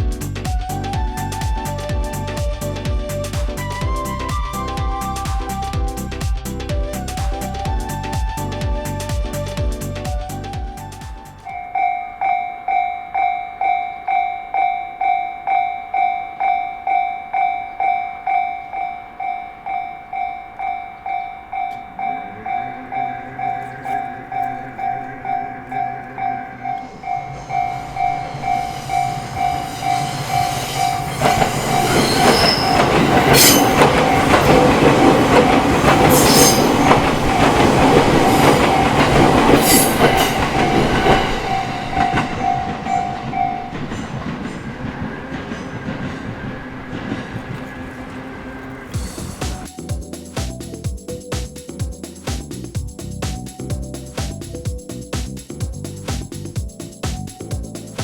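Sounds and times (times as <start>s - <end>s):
level-crossing warning bell: 11.4s - 46.7s.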